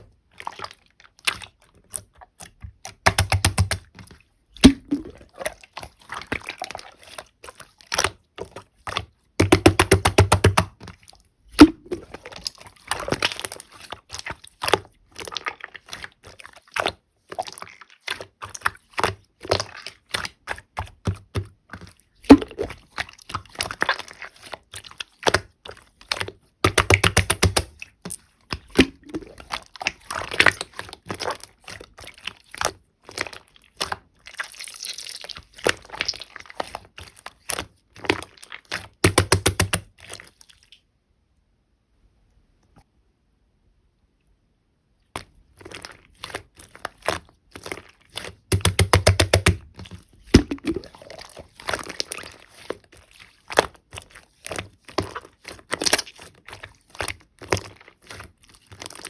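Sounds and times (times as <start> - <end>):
slime squeezed by hand: 4.6 - 18.3, 22.2 - 40.8, 45.2 - 59.0.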